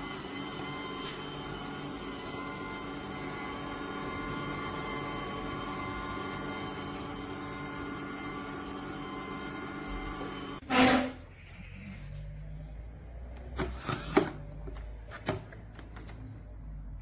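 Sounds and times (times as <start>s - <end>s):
ice cream maker running: 0.0s - 10.6s.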